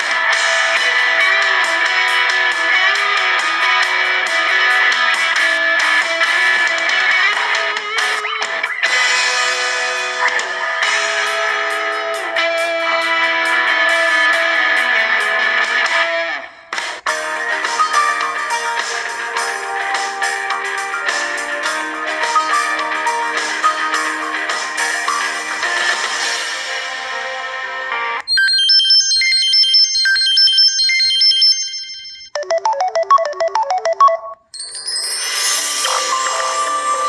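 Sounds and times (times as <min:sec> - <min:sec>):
guitar ringtone music: 0:00.0 - 0:37.0
phone ringtones: 0:17.1 - 0:25.6, 0:28.2 - 0:37.0
mallet-like notes: 0:17.1 - 0:25.8, 0:33.4 - 0:37.0
high bright chiming melody: 0:17.1 - 0:26.0, 0:34.4 - 0:37.0.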